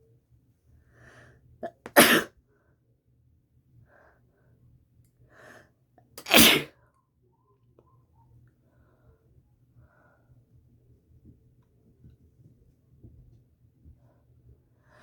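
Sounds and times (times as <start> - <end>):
person sneezing: 1.6 - 2.3, 6.2 - 6.7.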